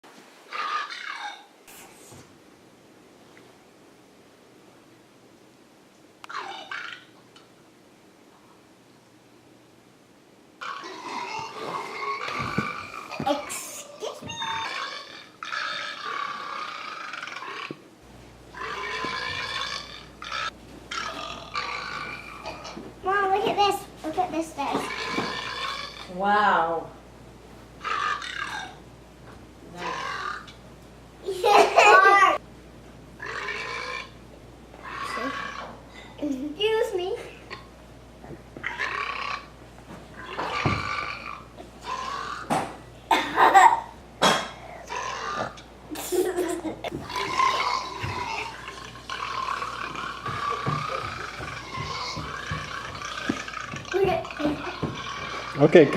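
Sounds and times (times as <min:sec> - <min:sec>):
recorded belches through phone speaker: 0:44.2 - 0:45.6.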